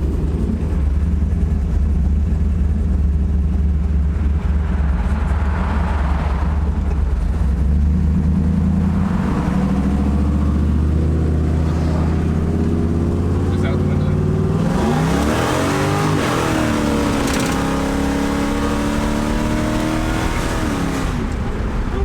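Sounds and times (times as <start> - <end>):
car engine running: 0.0 - 22.0
tyres on road: 0.0 - 22.0.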